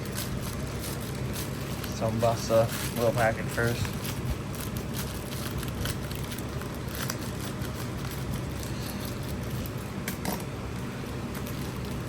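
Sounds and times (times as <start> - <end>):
packaging crinkling: 0.0 - 9.8
steady background hum: 0.0 - 12.0.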